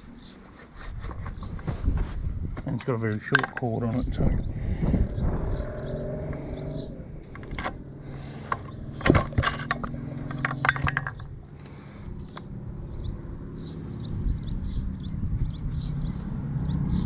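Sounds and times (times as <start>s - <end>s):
metallic clicks and rattles: 3.2s - 4.1s, 7.2s - 12.5s
steady low hum: 3.4s - 16.2s.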